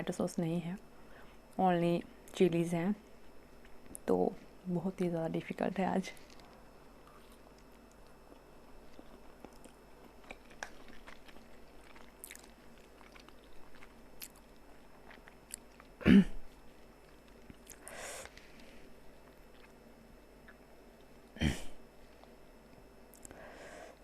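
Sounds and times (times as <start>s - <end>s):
person chewing noodles: 6.2s - 21.3s, 23.1s - 23.4s.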